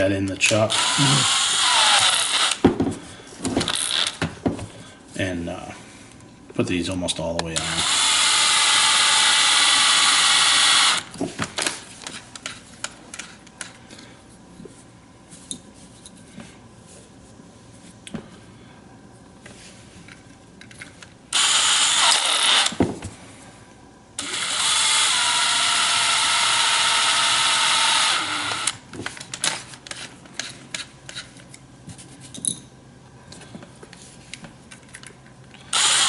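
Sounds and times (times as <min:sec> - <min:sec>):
power drill spinning: 0:00.7 - 0:02.6, 0:03.6 - 0:04.2, 0:07.6 - 0:11.1, 0:21.3 - 0:22.8, 0:24.2 - 0:28.8, 0:35.7 - 0:36.0
clicks of handling parts: 0:33.3 - 0:35.6.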